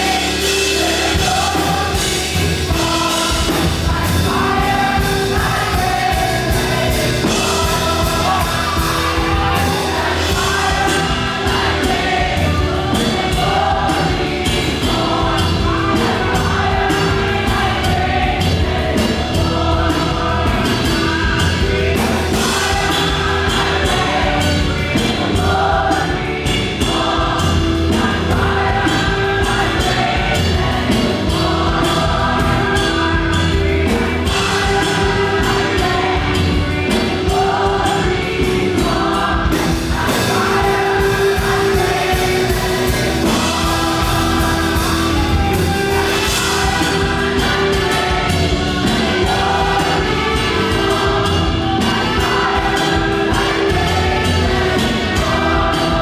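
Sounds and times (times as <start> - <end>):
band with fast beat: 0.0 - 56.0
choir singing: 0.0 - 56.0.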